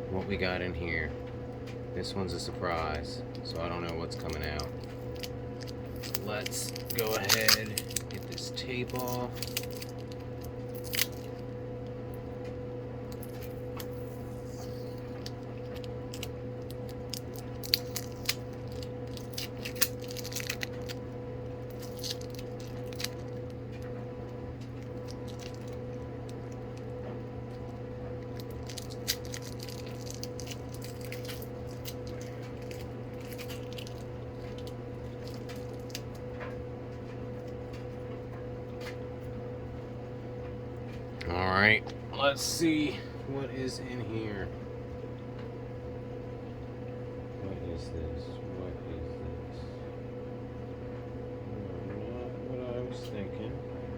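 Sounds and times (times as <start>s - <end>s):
steady hum: 0.0s - 53.9s
packaging crinkling and tearing: 3.4s - 11.5s, 13.1s - 36.4s.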